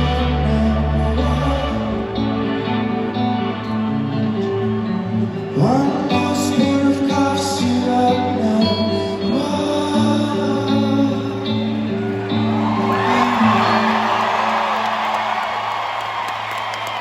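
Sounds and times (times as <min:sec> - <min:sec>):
man singing: 0:00.0 - 0:03.9, 0:05.1 - 0:14.9
crowd cheering: 0:11.7 - 0:17.0.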